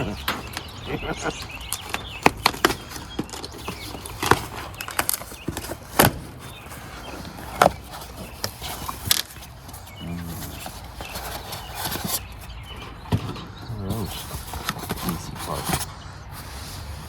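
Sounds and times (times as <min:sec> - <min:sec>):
cardboard box being opened: 0:01.7 - 0:13.3.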